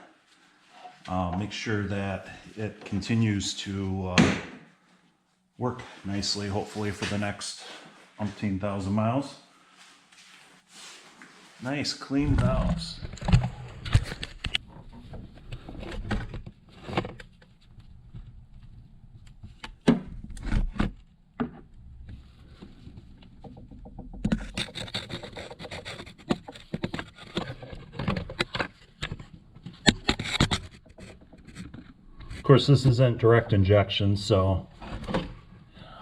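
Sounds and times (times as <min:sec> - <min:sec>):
scraping and rubbing: 0:22.0 - 0:32.8.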